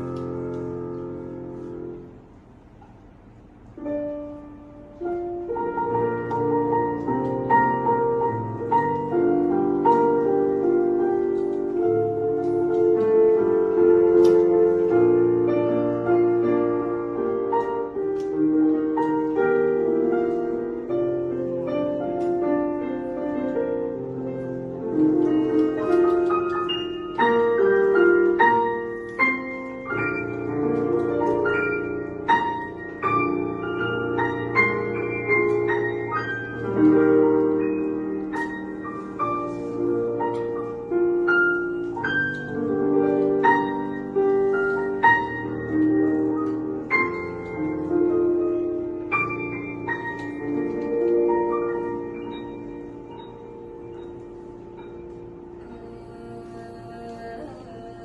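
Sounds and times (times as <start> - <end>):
piano playing slow chords: 0.0 - 58.0.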